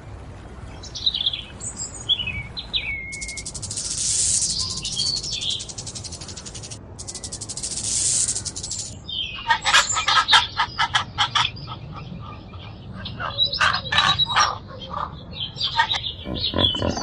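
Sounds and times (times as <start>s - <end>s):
bird squawking and chirping: 13.0s - 17.0s.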